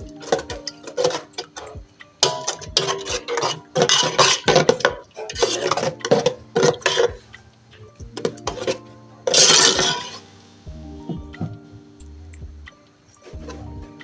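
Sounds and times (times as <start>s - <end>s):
metal spoon scraping in a pot: 0.2s - 7.4s, 8.2s - 10.3s.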